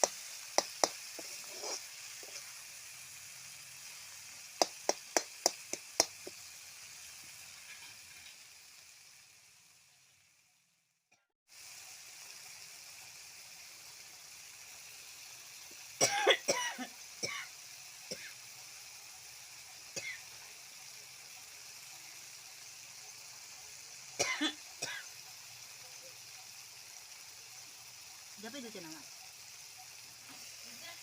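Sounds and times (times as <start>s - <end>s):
steady hiss: 0.0s - 10.4s, 11.5s - 31.0s
person coughing: 16.0s - 17.5s, 24.2s - 25.0s.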